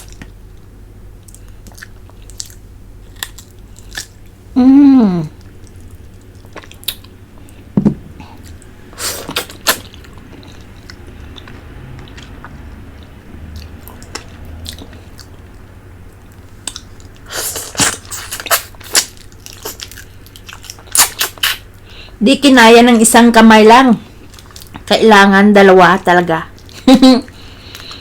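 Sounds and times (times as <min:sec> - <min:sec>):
quiet chewing: 0:00.0 - 0:04.4, 0:05.4 - 0:22.0, 0:26.5 - 0:28.0.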